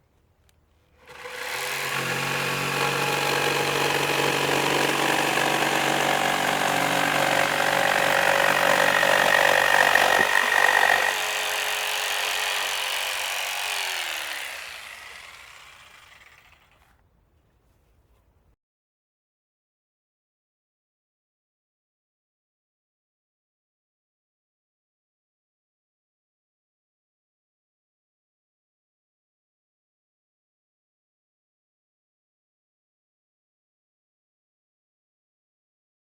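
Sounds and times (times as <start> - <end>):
electric jigsaw motor whine: 1.0 - 16.9.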